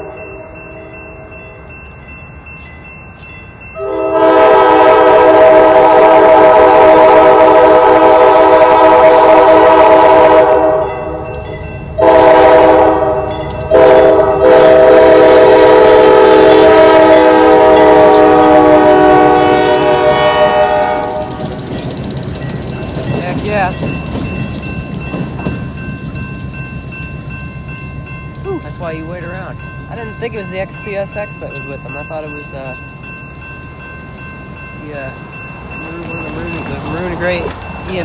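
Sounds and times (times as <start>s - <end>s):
locomotive air horn blasts: 3.8s - 11.1s, 12.0s - 21.5s.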